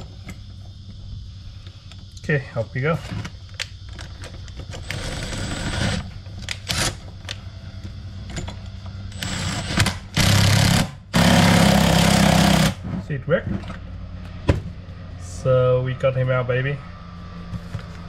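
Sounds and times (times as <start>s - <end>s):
power tool running: 4.6s - 7.1s, 8.6s - 12.8s.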